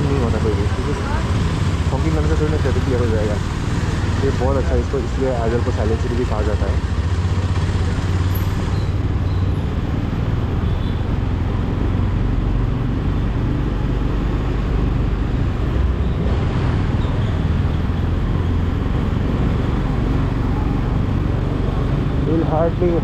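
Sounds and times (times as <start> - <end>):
rush of riding wind: 6.8 - 23.0.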